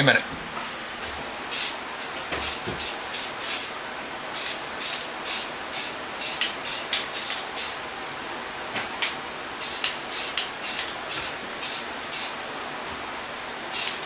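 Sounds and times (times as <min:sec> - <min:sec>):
steady background hiss: 0:00.0 - 0:14.0
aerosol spray bursts: 0:01.5 - 0:03.8, 0:04.4 - 0:07.8, 0:09.6 - 0:12.4, 0:13.7 - 0:14.0.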